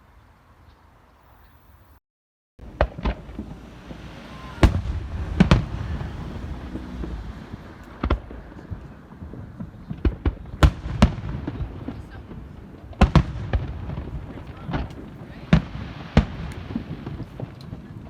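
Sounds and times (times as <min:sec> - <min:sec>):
fireworks bangs: 0:02.6 - 0:18.0
low rumble: 0:03.2 - 0:09.6.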